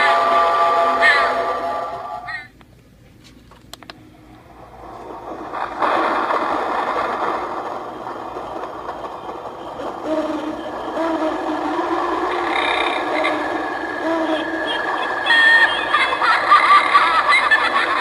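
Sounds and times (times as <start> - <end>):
spooky rushing noise: 4.4 - 18.0.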